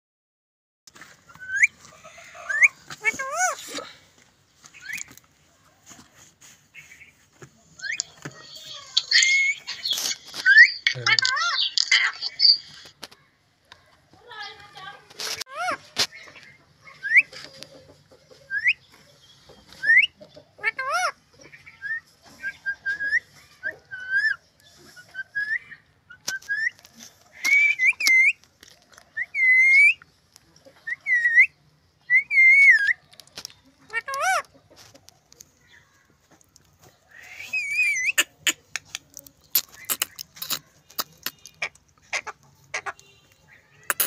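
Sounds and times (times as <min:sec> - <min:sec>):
harsh parrot calls: 0:01.3 - 0:03.9, 0:37.1 - 0:38.9.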